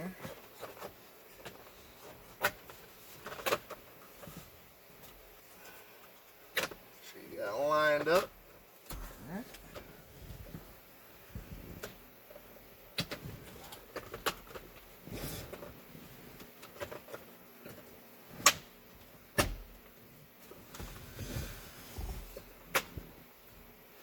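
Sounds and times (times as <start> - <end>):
plastic panels clicking and snapping: 6.5 - 6.8, 12.9 - 14.8, 19.3 - 19.7, 22.7 - 23.0.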